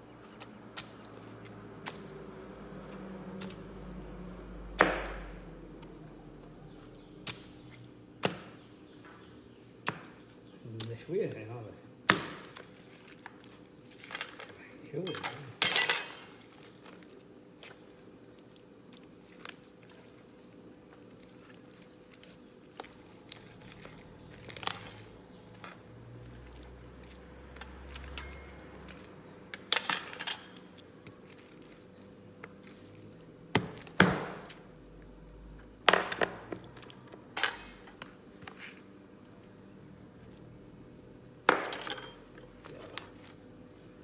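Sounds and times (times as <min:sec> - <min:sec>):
kitchen utensils and dishes clinking: 0:14.0 - 0:16.6, 0:24.4 - 0:25.2, 0:27.6 - 0:30.8, 0:37.3 - 0:38.1, 0:41.5 - 0:42.4.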